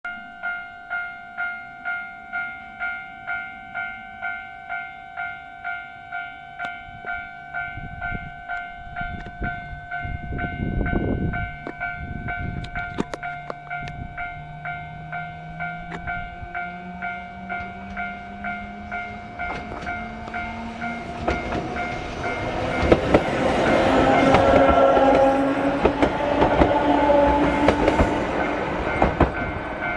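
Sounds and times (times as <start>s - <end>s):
level crossing bell ringing: 0.1s - 22.9s
train wheels on rails: 8.0s - 29.9s
train motor whine: 12.6s - 29.9s.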